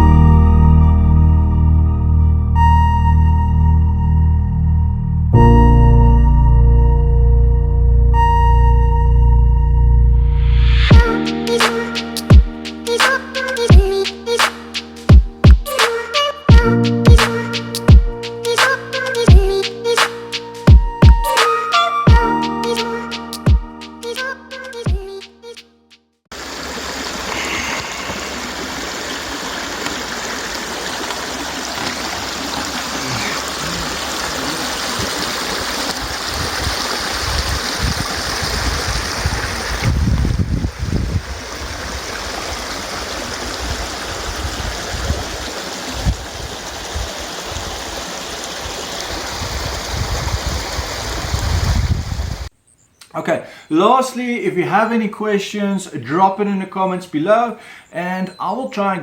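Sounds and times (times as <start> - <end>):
stream of water flowing: 26.3 - 52.5.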